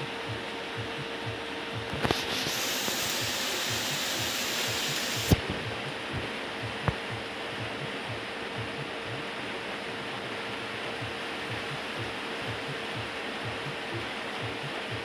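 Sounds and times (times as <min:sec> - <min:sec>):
steady machine hum: 0:00.0 - 0:15.0
hiss of rushing air: 0:01.8 - 0:07.9.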